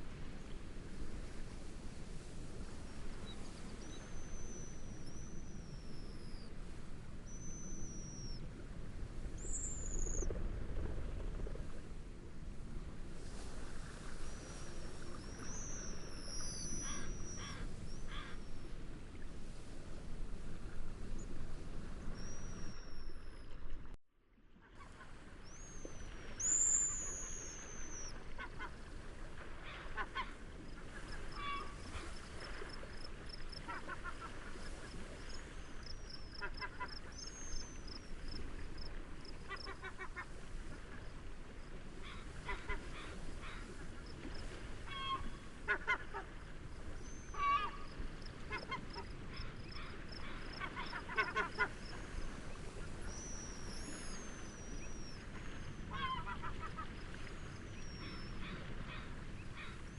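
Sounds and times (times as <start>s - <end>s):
wind and waves rushing: 0.0s - 24.0s, 24.9s - 59.9s
high whistled bird calls: 25.5s - 28.1s.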